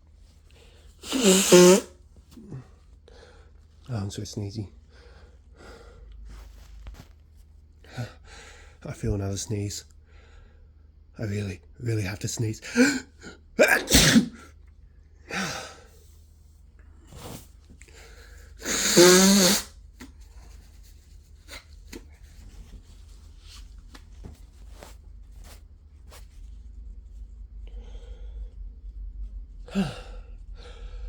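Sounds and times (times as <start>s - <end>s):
short bursts of breath: 1.0s - 1.9s, 18.6s - 19.7s
person sneezing: 1.0s - 2.7s, 12.7s - 14.5s, 18.6s - 19.7s.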